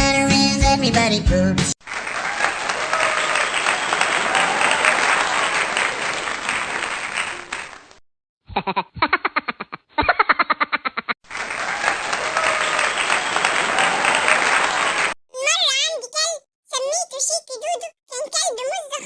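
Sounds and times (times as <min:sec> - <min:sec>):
crowd applause and cheering: 0:01.8 - 0:08.0, 0:11.2 - 0:15.2
rhythmic laughter: 0:08.5 - 0:15.1.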